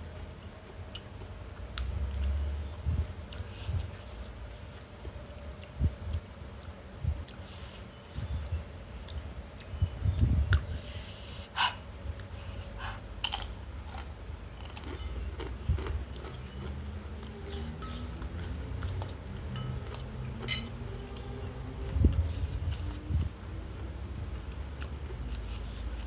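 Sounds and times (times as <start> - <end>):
person chewing crunchy food: 13.2 - 26.0.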